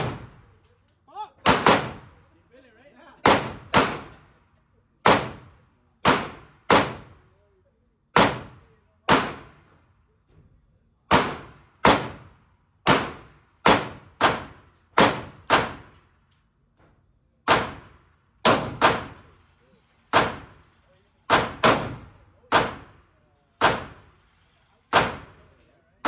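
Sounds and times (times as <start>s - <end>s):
echoing gunshots indoors: 0.0s - 0.5s, 1.4s - 2.3s, 3.2s - 4.4s, 5.0s - 7.2s, 8.2s - 9.8s, 11.1s - 16.0s, 17.5s - 25.5s.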